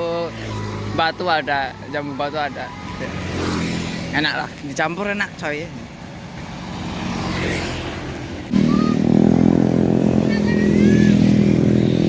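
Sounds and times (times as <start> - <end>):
road traffic noise: 0.0 - 12.0
loud vehicle engine running: 8.0 - 12.0
faint high voices: 8.5 - 9.1, 10.3 - 11.5.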